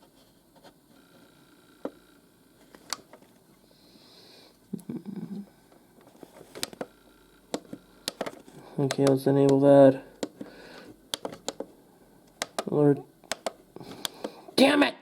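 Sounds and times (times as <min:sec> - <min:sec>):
radio buttons clicking: 0:02.7 - 0:03.2, 0:06.4 - 0:14.4.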